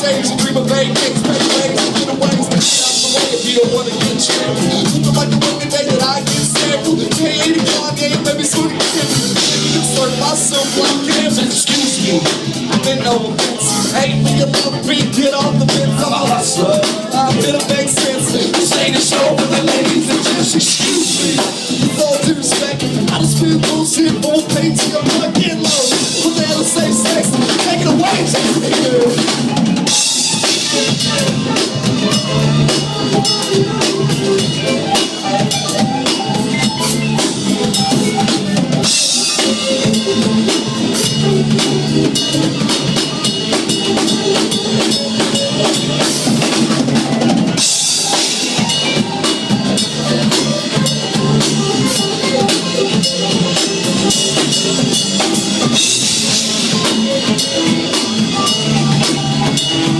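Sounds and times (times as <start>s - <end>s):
drum kit beat: 0.0s - 59.9s
live band playing: 0.0s - 59.9s.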